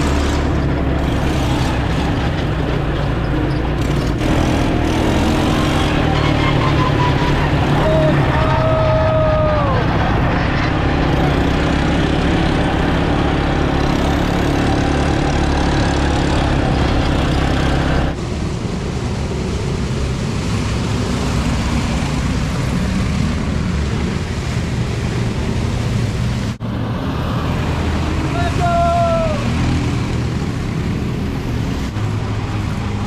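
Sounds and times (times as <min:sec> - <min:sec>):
atv engine under throttle: 0:00.0 - 0:08.3, 0:09.8 - 0:18.2
rush of wind or water: 0:07.0 - 0:13.9, 0:18.0 - 0:33.0.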